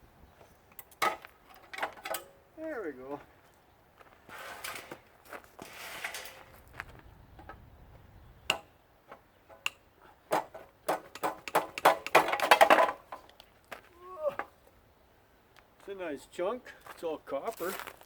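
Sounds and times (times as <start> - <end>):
metal clanks and rattles: 0.7 - 2.4, 5.6 - 6.6, 9.5 - 13.4.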